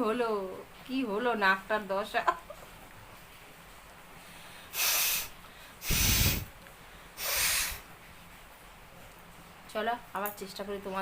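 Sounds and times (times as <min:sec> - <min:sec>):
person blowing nose: 0:04.7 - 0:06.5, 0:07.2 - 0:07.8.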